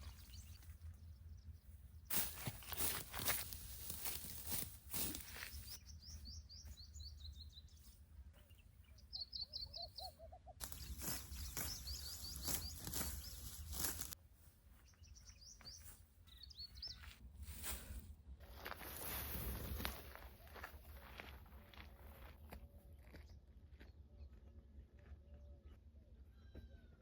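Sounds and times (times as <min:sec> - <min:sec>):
rustles: 0:02.1 - 0:05.8, 0:10.6 - 0:14.2
small bird chirping: 0:05.1 - 0:14.2.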